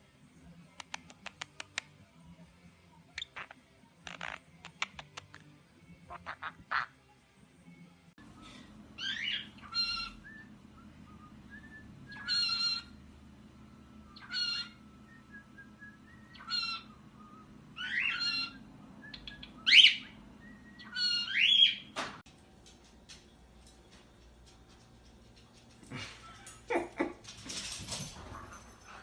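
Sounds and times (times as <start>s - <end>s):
steady low hum: 7.7s - 21.5s
bird squawking calls: 9.0s - 10.2s, 12.1s - 13.0s, 14.2s - 14.8s, 16.3s - 17.0s, 17.8s - 18.7s, 20.8s - 21.9s.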